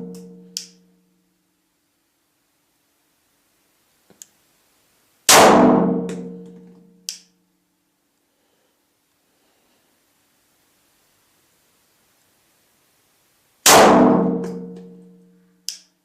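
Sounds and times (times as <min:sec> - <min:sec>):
faint clicks: 0:04.1 - 0:04.4
pistol shot echoing: 0:05.3 - 0:06.3, 0:13.6 - 0:14.7.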